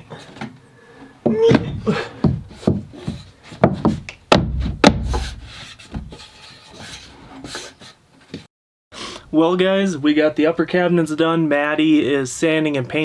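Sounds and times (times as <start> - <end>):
wood rubbing and scraping: 1.2 - 8.4
sharp knocks on wood: 1.3 - 6.1.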